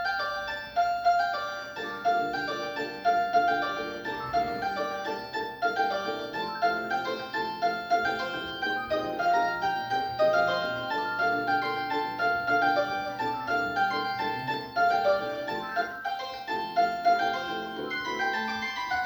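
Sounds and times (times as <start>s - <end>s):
phone ringtone melody: 0.0s - 19.0s.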